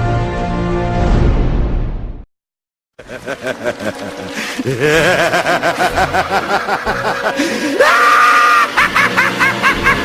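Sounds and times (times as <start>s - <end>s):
background music: 0.0s - 1.6s, 3.0s - 10.0s
maniacal laughing: 3.0s - 10.0s.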